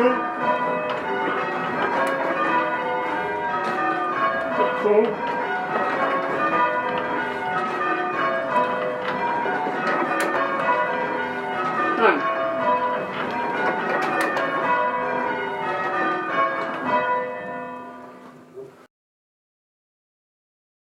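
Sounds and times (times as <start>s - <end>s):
church bells ringing changes: 0.0s - 18.6s.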